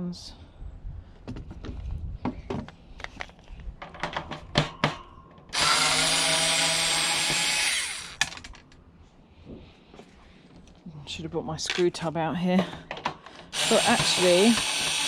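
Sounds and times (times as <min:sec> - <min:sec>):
handling clicks and knocks: 0:01.3 - 0:05.5, 0:12.6 - 0:14.2
power drill driver running: 0:05.5 - 0:08.4, 0:13.5 - 0:15.0.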